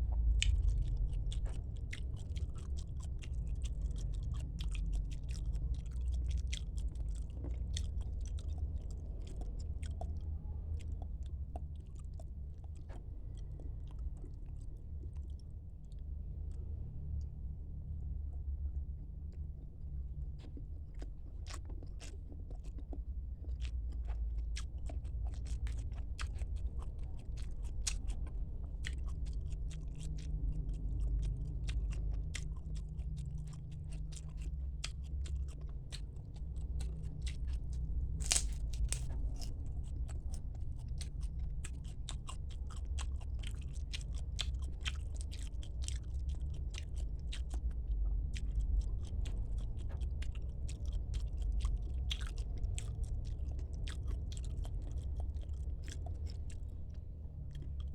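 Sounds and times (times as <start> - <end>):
low hum: 0.0 - 44.4
close chewing and crunching: 0.0 - 57.9
wet mouth clicks: 0.2 - 14.4, 24.9 - 40.2.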